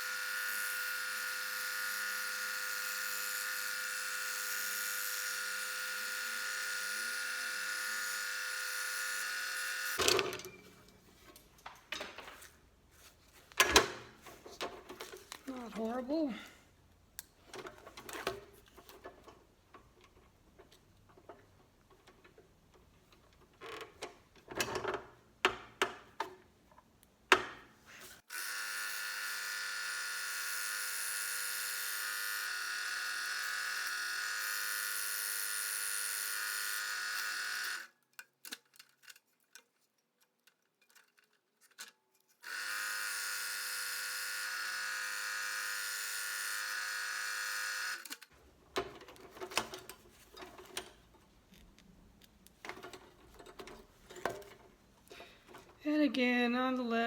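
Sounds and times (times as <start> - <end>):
scroll saw cutting plywood: 0.0 - 10.0.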